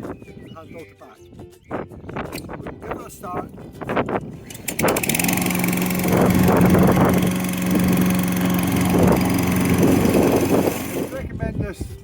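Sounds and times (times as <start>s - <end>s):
lawn mower engine running: 4.3s - 11.4s.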